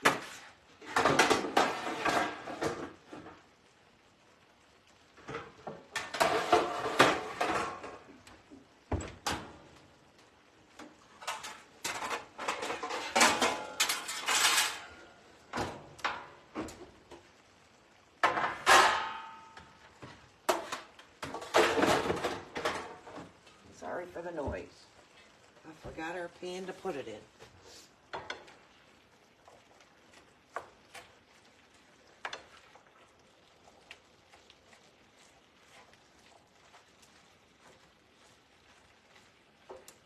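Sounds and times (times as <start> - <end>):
metal pans clattering: 0.0 - 3.5, 5.2 - 8.1, 10.8 - 16.9, 18.2 - 23.4.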